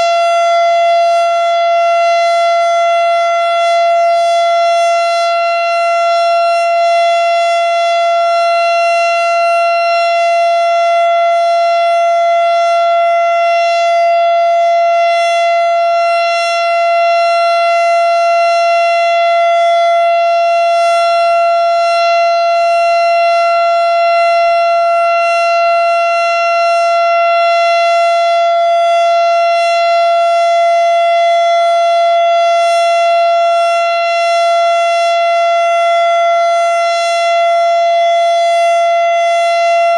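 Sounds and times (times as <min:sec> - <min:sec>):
single-tone warning siren: 0:00.0 - 0:39.9.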